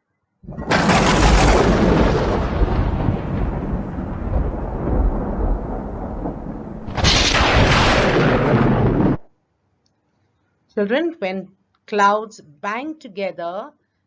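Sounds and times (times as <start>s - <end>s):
thunder clap and rumble: 0.5s - 9.3s.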